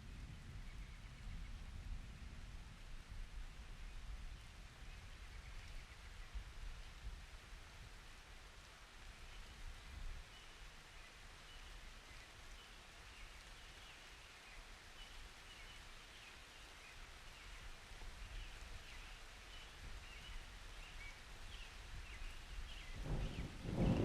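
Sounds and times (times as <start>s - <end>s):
rain hiss: 2.2s - 24.0s
low rumble of thunder: 21.6s - 24.0s.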